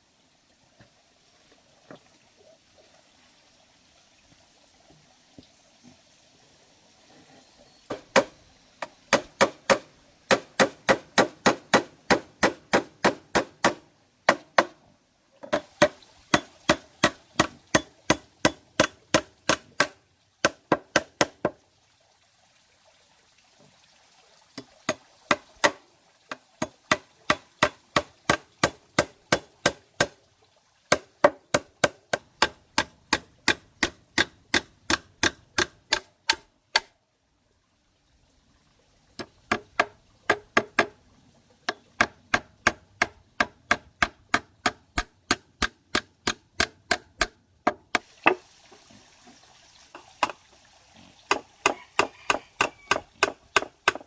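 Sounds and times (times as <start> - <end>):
sharp tool strikes: 41.7 - 48.4.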